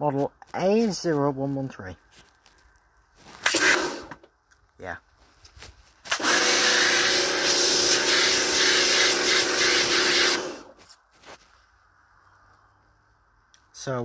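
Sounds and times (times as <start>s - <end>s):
pressure washer water jet hissing: 3.4s - 4.1s, 6.1s - 10.7s
pump motor humming: 6.1s - 10.7s.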